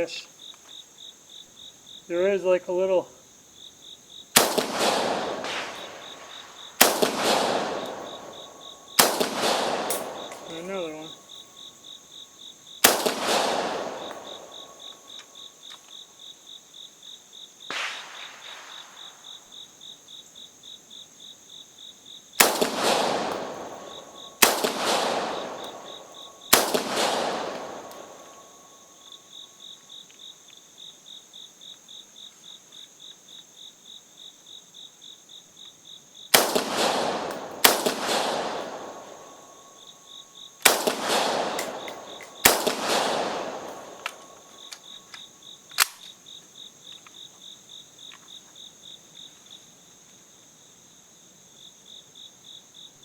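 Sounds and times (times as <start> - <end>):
insects chirping: 0.0 - 53.0
rifle shots with echo: 4.4 - 11.4, 12.8 - 15.3, 17.7 - 19.5, 22.4 - 28.9, 36.3 - 39.9, 40.6 - 45.0.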